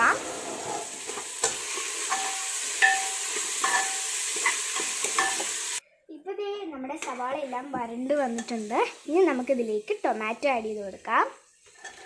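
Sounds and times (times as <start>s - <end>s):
onions sizzling in oil: 0.0s - 5.8s, 7.0s - 12.0s
spoon scraping and knocking pot: 0.3s - 5.6s, 11.6s - 12.0s
pot ringing: 2.0s - 4.2s.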